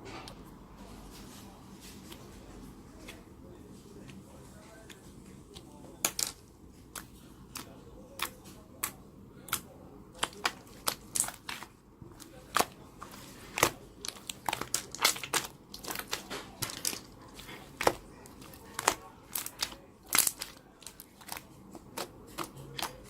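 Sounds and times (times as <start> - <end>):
slime clicking and popping: 6.9 - 12.8, 13.5 - 23.0.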